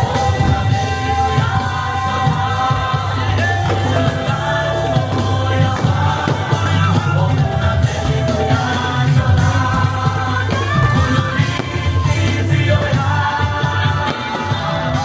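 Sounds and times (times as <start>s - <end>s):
show music with singing: 0.0s - 15.0s
strong steady bass: 0.0s - 15.0s.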